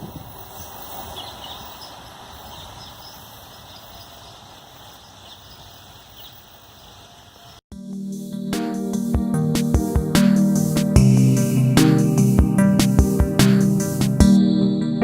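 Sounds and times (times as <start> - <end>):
bird chirps: 0.0 - 7.6.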